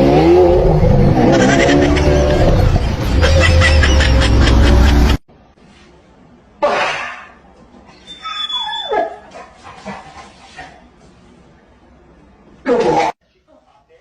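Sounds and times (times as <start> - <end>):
dog yelping: 8.0 - 9.4
dog yipping: 8.0 - 9.4.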